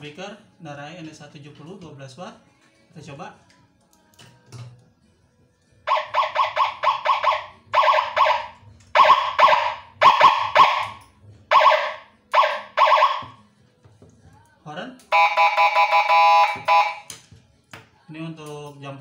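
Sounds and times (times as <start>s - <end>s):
electronic siren alarm blasts: 5.9s - 13.4s, 15.1s - 17.1s.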